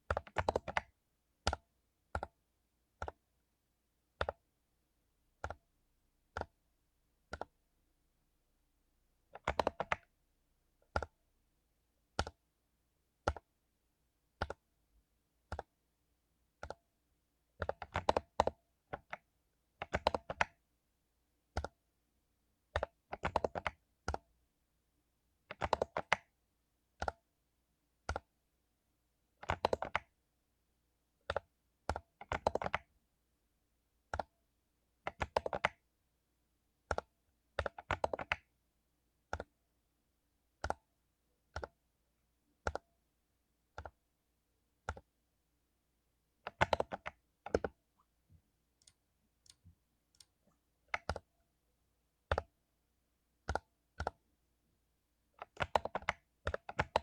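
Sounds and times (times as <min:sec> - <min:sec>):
mechanical keyboard typing: 0:00.1 - 0:02.4, 0:04.2 - 0:04.4, 0:09.3 - 0:10.1, 0:14.4 - 0:14.6, 0:17.6 - 0:19.2, 0:19.8 - 0:20.6, 0:22.7 - 0:24.2, 0:25.5 - 0:26.3, 0:29.4 - 0:30.1, 0:31.2 - 0:32.9, 0:35.1 - 0:35.8, 0:36.9 - 0:38.5, 0:41.5 - 0:41.7, 0:46.4 - 0:47.8, 0:48.8 - 0:51.3, 0:53.4 - 0:54.2, 0:55.4 - 0:57.0.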